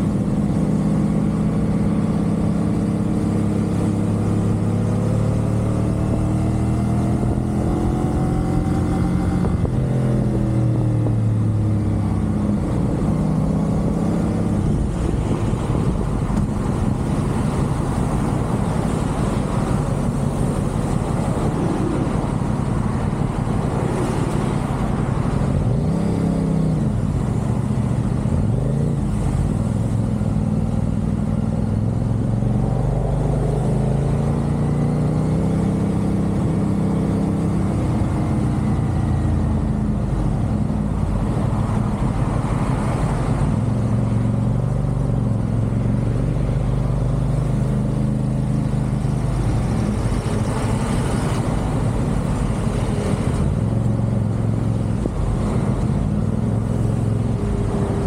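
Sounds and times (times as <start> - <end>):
motorcycle engine accelerating: 0.0 - 42.5
wind and road noise: 0.0 - 58.0.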